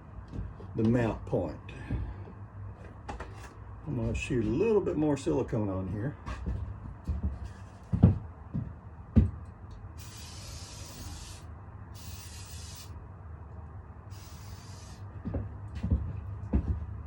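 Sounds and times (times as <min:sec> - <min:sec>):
aerosol can hissing: 0:10.0 - 0:12.9, 0:14.1 - 0:15.0.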